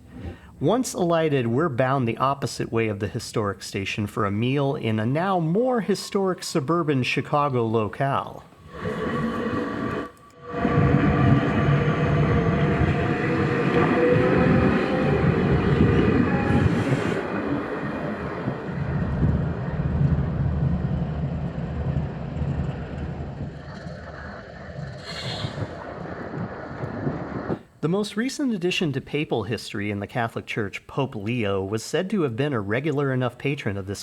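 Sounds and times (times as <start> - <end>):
train rail rumble: 5.2 - 27.6
train motor whine: 8.4 - 23.4.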